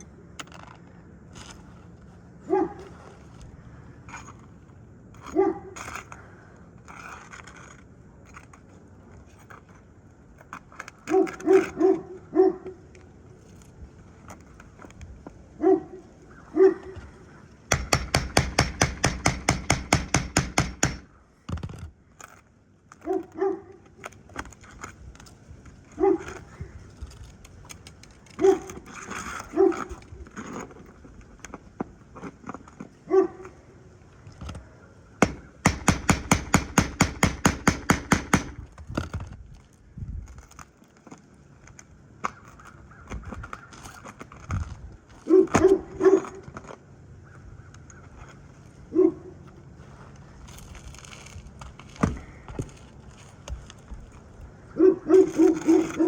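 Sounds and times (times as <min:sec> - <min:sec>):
dog barking: 0:02.5 - 0:02.9, 0:05.3 - 0:05.7, 0:11.1 - 0:12.8, 0:15.6 - 0:17.0, 0:23.0 - 0:23.8, 0:26.0 - 0:26.4, 0:28.4 - 0:28.7, 0:29.5 - 0:29.9, 0:33.1 - 0:33.5, 0:45.3 - 0:46.4, 0:48.9 - 0:49.3, 0:54.8 - 0:56.0.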